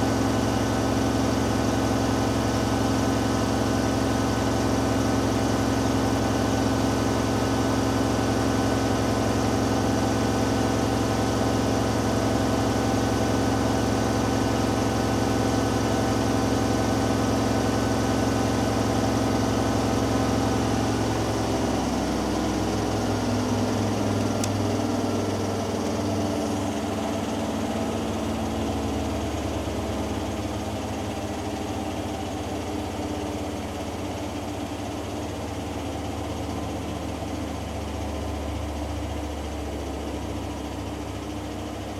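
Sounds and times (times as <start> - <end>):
washing machine spinning: 9.8 - 39.0.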